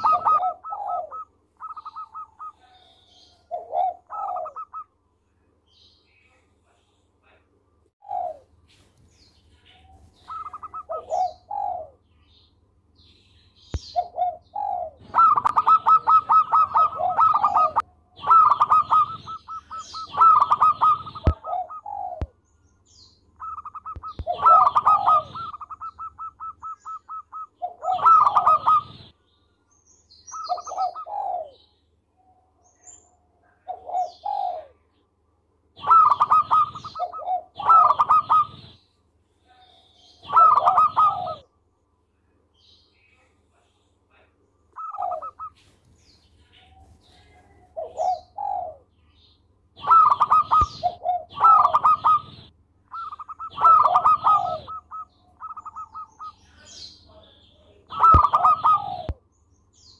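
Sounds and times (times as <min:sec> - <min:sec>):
dove rattling cooing: 0:00.0 - 0:04.8, 0:08.0 - 0:08.5, 0:09.8 - 0:12.0, 0:13.9 - 0:22.3, 0:23.4 - 0:29.1, 0:33.7 - 0:34.7, 0:35.8 - 0:38.7, 0:40.3 - 0:41.4, 0:44.8 - 0:45.5, 0:47.1 - 0:48.9, 0:49.8 - 0:56.3, 0:57.9 - 0:59.2.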